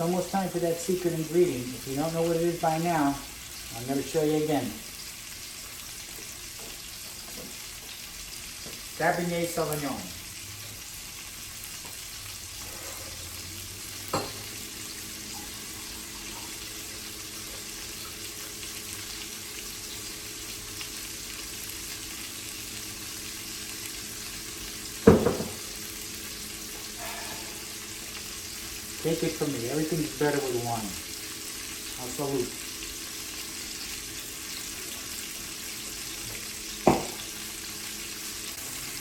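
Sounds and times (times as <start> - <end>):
chicken sizzling in a pan: 0.0 - 39.0
louder clunk: 25.1 - 25.6, 36.8 - 37.2.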